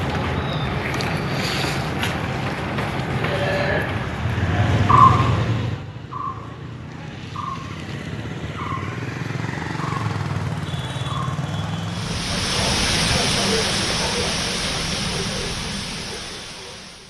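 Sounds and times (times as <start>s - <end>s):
heavy rain rushing: 11.9s - 17.0s
vehicle engine running: 12.0s - 17.0s.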